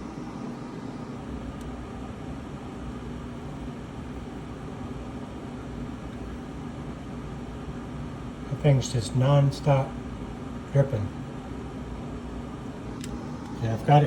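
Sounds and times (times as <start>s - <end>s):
dehumidifier humming: 0.0s - 14.0s.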